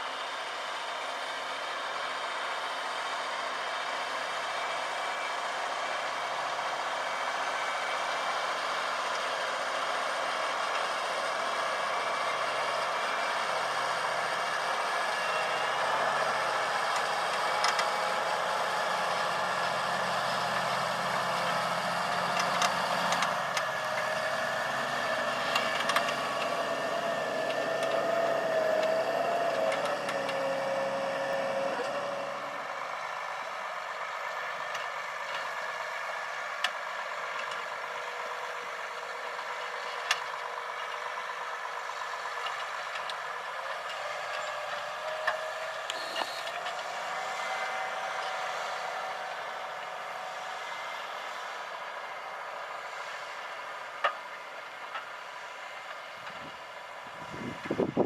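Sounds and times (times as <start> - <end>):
tractor diesel engine running: 0.0 - 58.0
wavering whine: 45.9 - 49.8.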